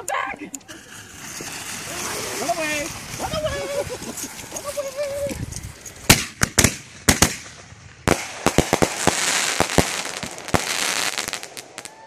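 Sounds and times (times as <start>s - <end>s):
hissing crackle: 0.5s - 12.0s
firework mortar bangs: 6.0s - 12.0s.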